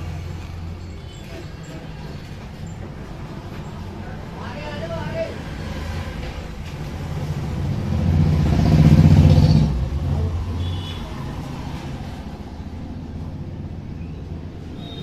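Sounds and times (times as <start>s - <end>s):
vehicle engine passing by: 6.8s - 13.9s.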